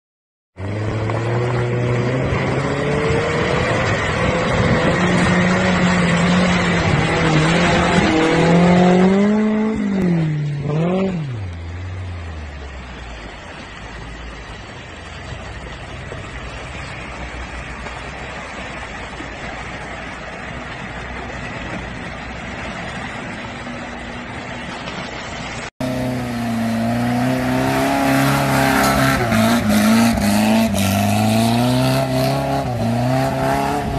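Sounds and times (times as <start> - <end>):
engine revving hard: 0.8 - 11.4.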